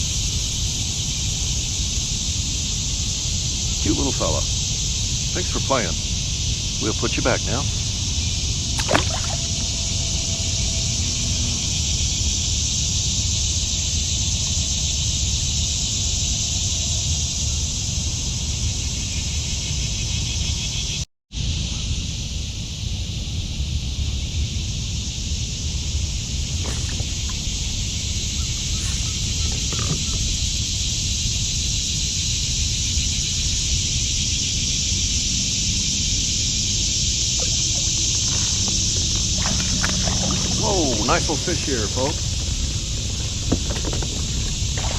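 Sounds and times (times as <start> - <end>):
constant high hiss: 0.0 - 44.9
insect chorus droning: 0.0 - 44.9
wind on microphone: 37.2 - 44.9.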